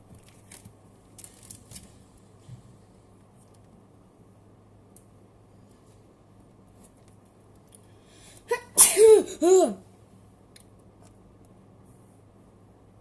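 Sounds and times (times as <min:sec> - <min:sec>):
person sneezing: 0:08.5 - 0:09.8.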